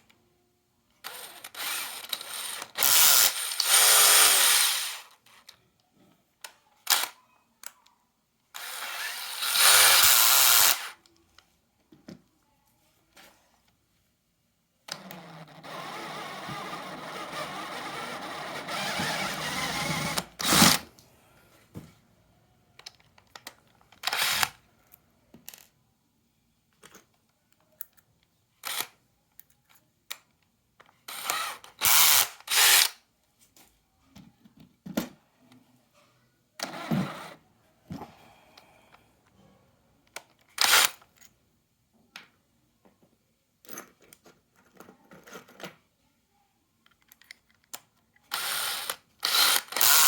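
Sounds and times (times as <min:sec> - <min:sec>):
cordless drill motor running: 0:01.1 - 0:05.0, 0:08.6 - 0:10.9, 0:15.1 - 0:20.8, 0:24.1 - 0:24.5, 0:31.1 - 0:32.9, 0:48.3 - 0:50.0.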